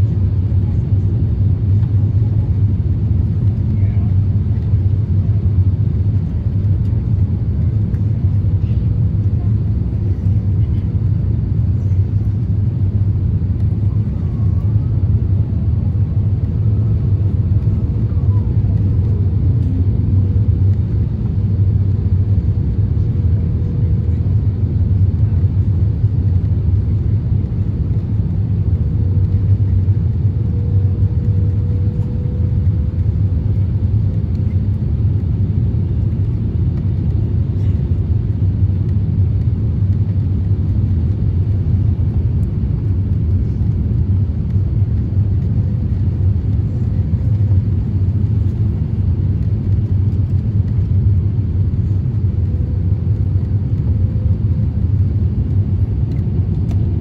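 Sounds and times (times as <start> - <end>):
airplane cabin engine rumble: 0.0 - 57.0.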